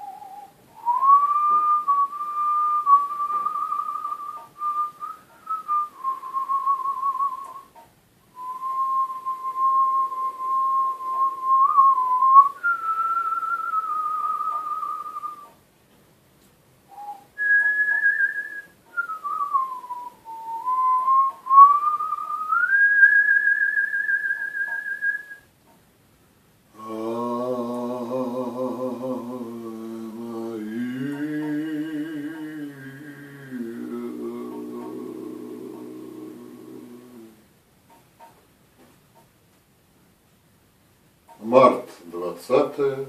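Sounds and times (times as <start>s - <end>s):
person whistling a melody: 0.0s - 7.7s, 8.4s - 15.6s, 16.9s - 25.5s.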